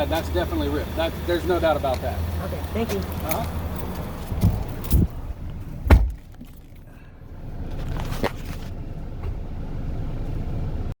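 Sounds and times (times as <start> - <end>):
car engine rumble: 0.0 - 11.0.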